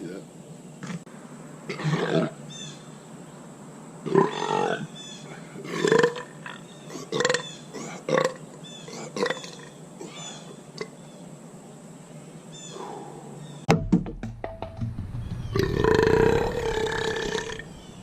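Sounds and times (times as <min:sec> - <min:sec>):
man burping: 0:07.0 - 0:08.4, 0:15.8 - 0:17.6.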